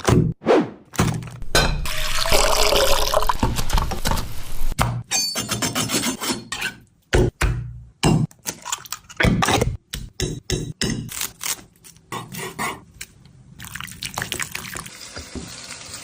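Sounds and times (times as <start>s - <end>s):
utensils scraping a pan: 5.2s - 6.8s.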